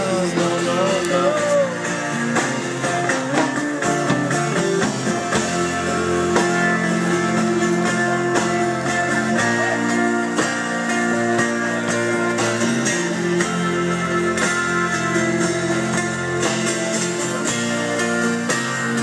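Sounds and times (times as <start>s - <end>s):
person singing: 0.0s - 4.5s
guitar plucked and strummed: 0.0s - 19.0s.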